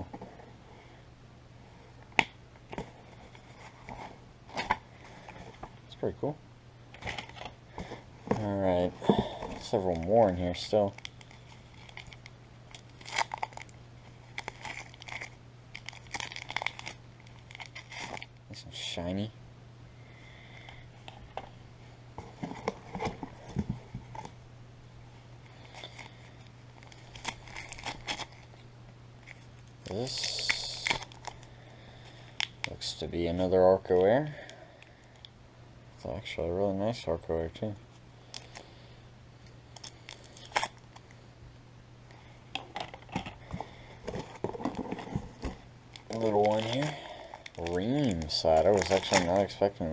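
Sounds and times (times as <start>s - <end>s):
steady low hum: 0.0s - 49.9s
packaging clicks and rustles: 7.0s - 18.4s, 25.5s - 28.6s, 42.6s - 49.6s.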